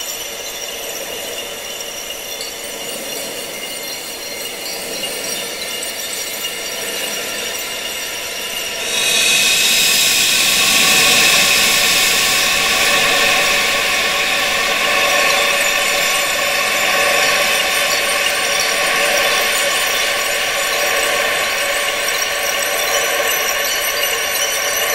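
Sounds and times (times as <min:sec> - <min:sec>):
rushing wind hiss: 0:00.2 - 0:24.9
held tones: 0:05.5 - 0:20.5.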